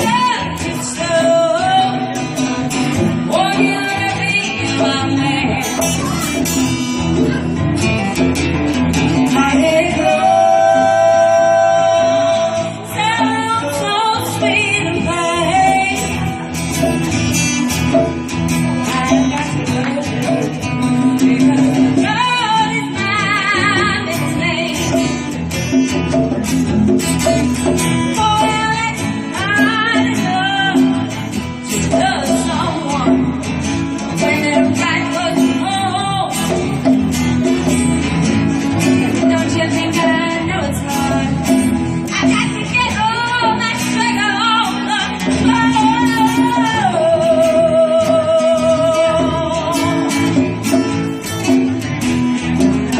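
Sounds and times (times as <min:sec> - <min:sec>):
person singing with vibrato: 0:00.0 - 0:06.7, 0:09.2 - 0:17.1, 0:18.8 - 0:25.6, 0:38.6 - 0:51.5
guitar and instrumental backing: 0:00.0 - 0:52.9
hand percussion: 0:00.0 - 0:52.9.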